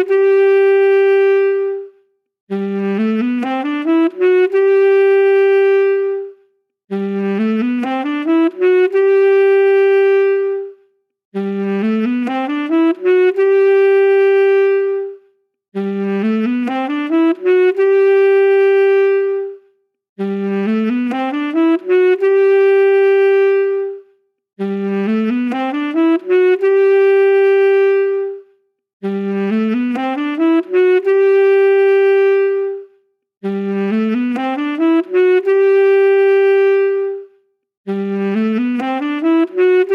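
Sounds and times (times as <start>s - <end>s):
saxophone phrase: 0.0s - 10.8s, 11.4s - 15.2s, 15.8s - 39.9s.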